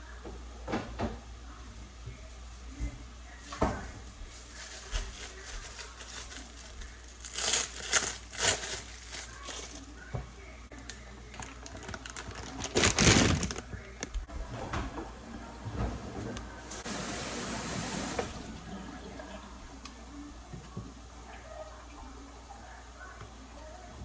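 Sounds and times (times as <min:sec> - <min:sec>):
crinkling and rustling: 0:03.4 - 0:10.2, 0:10.8 - 0:16.8.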